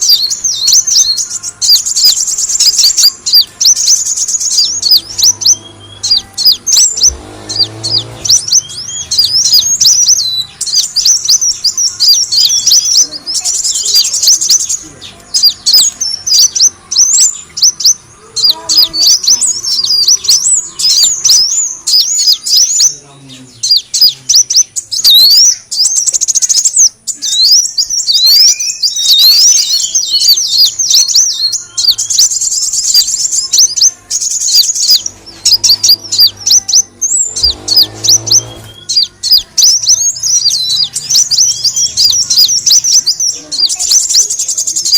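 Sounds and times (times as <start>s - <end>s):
sunbird chirping and trilling: 0.0s - 44.9s.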